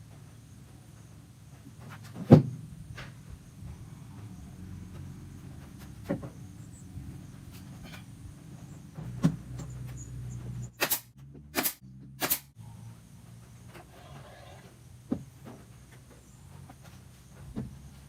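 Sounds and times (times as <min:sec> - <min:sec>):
short sharp bursts: 0:10.7 - 0:12.6.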